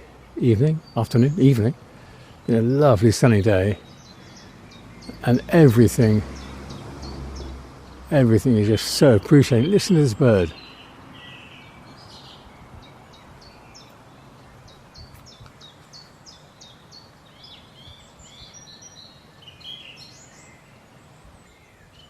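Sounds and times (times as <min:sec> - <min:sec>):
background hiss: 0:00.0 - 0:22.0
bird warbled phrases: 0:00.4 - 0:01.8, 0:02.4 - 0:03.9, 0:05.0 - 0:06.5, 0:08.1 - 0:10.6.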